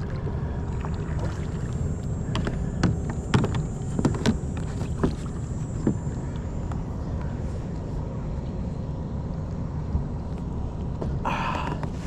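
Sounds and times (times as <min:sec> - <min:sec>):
steady low rumble: 0:00.0 - 0:12.0
paddle knocking kayak hull: 0:02.2 - 0:06.1.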